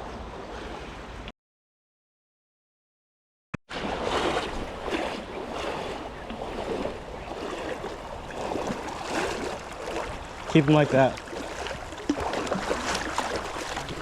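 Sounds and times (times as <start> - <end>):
stream water rushing: 3.8 - 14.0.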